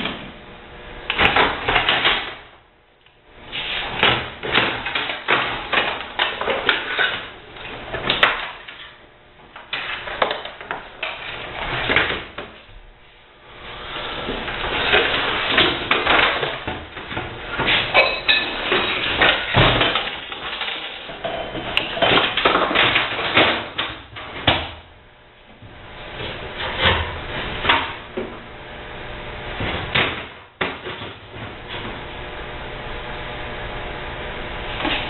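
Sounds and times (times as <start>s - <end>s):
metal parts and tools clanking: 17.6s - 23.8s.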